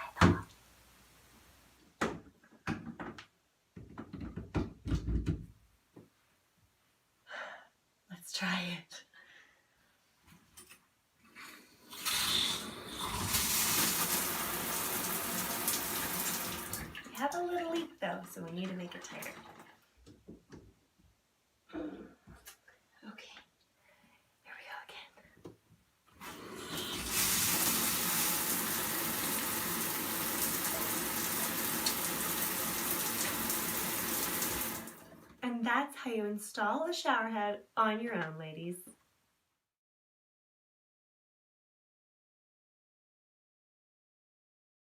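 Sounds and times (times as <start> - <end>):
shower water spraying: 11.9 - 17.0, 26.2 - 35.2.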